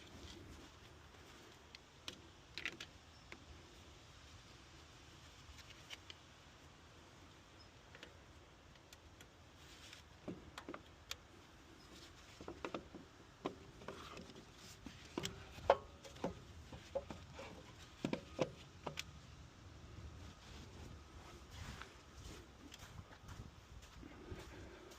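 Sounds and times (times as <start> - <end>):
light clicks and knocks: 7.9 - 19.2.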